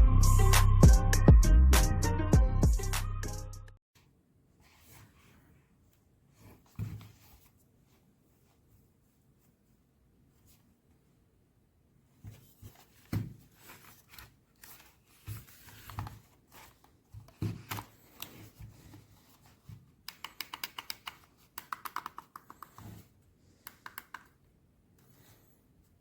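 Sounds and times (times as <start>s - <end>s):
handling taps and scrapes: 12.2s - 24.4s.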